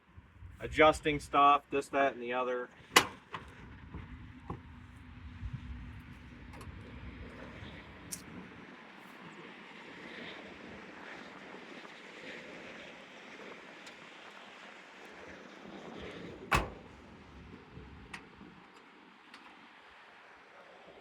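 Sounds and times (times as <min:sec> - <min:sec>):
wind and rain: 0:00.0 - 0:21.0
car door slamming shut: 0:16.5 - 0:17.0.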